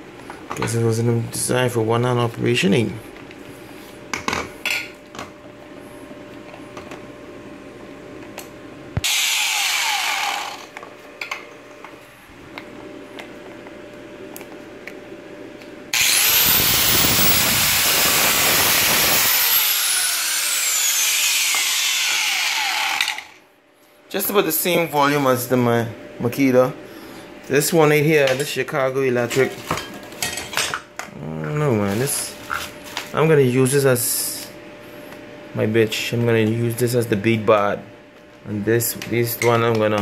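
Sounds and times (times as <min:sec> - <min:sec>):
angle grinder running: 0:09.0 - 0:10.8, 0:15.9 - 0:23.4.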